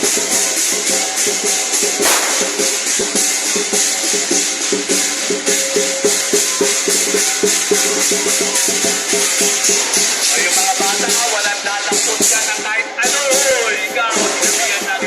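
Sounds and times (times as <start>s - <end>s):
cymbals clashing: 2.0s - 3.4s
drum strokes in fast beat: 2.0s - 4.2s.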